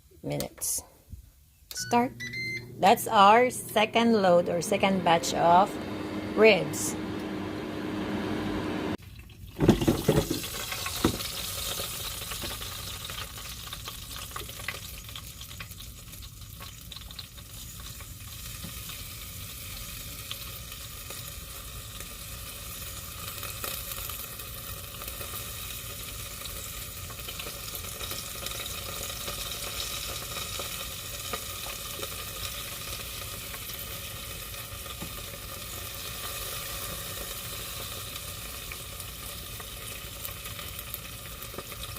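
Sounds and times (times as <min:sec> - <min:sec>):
air fryer fan whir: 0:01.7 - 0:09.0, 0:09.6 - 0:41.9
meat sizzling and crackling: 0:10.2 - 0:41.9.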